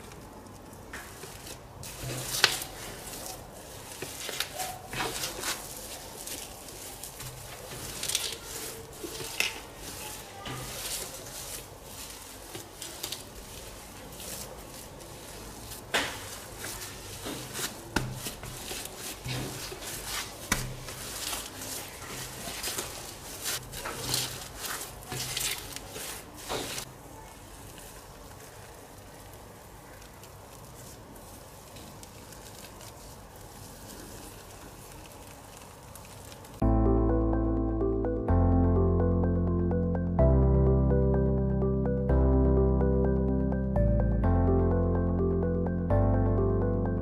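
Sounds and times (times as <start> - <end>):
slime squelching and clicking: 1.4 - 26.9.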